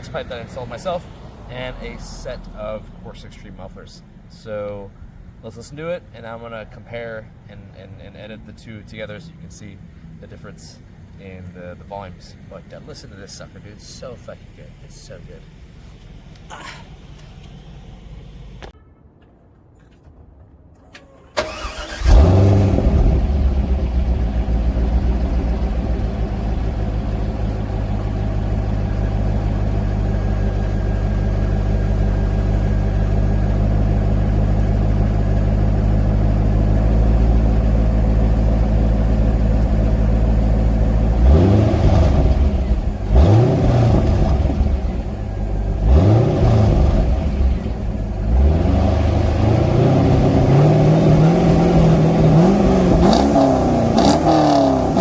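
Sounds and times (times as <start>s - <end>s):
car engine starting and idling: 0.0s - 18.8s, 19.4s - 55.0s
engine revving: 21.4s - 55.0s.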